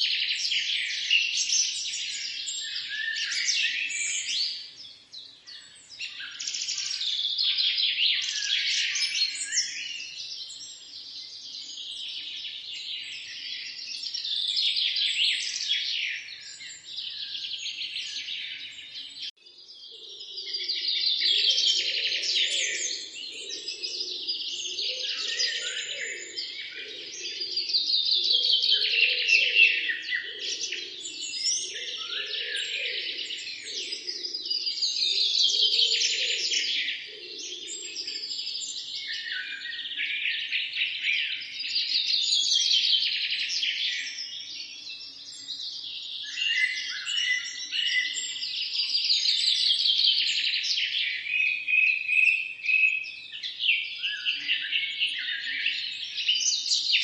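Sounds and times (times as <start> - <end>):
songbirds chirping and trilling: 0.0 - 57.0.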